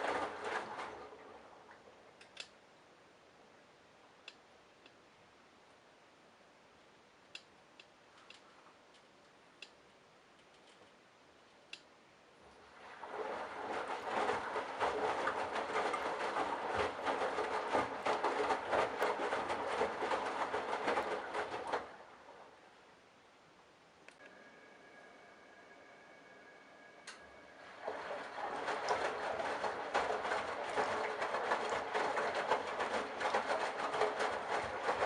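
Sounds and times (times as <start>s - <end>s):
washing machine drum rumbling: 0.0s - 1.5s, 12.8s - 22.0s, 27.6s - 35.0s.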